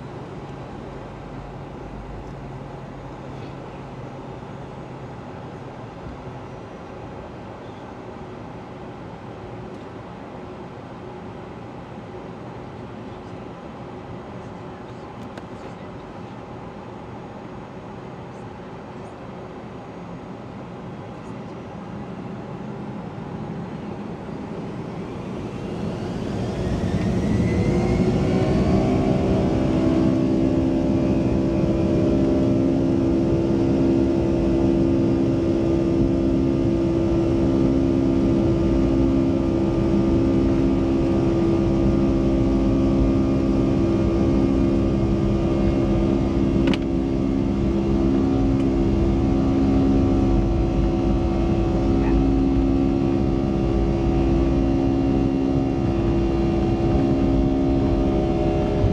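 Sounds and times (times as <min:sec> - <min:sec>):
jet engines spooling up: 0:23.7 - 0:58.9
pulsing hum: 0:24.6 - 0:58.9.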